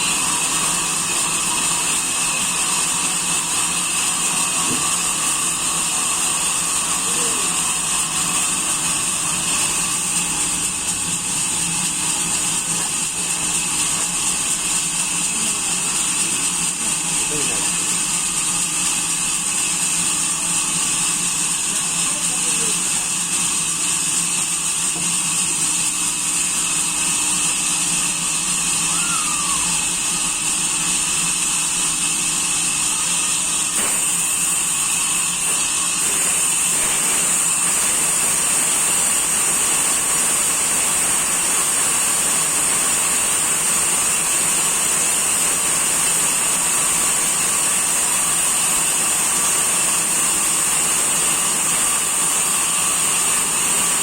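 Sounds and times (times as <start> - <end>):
chainsaw engine running: 0.0 - 17.9, 33.5 - 54.0.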